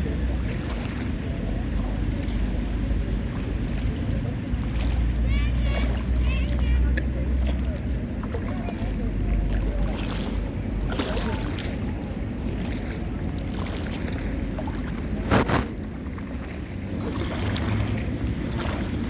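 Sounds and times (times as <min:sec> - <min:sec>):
water rushing: 0:00.0 - 0:19.0
gust or splash: 0:09.5 - 0:19.0.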